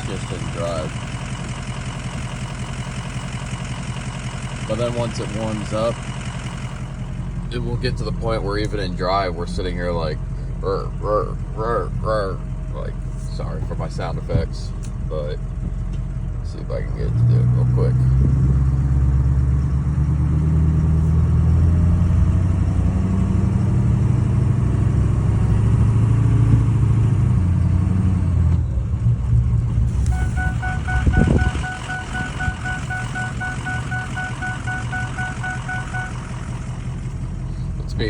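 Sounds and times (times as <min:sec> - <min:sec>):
diesel engine idling: 0:00.0 - 0:38.0
warning chime: 0:30.1 - 0:36.4.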